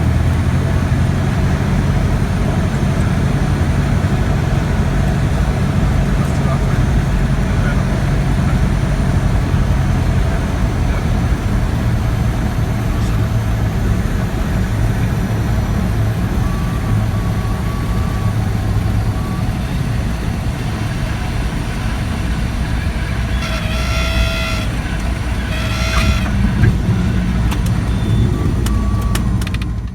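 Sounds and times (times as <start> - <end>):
aircraft engine and propeller drone: 0.0 - 29.9
stall warning horn: 20.7 - 29.4.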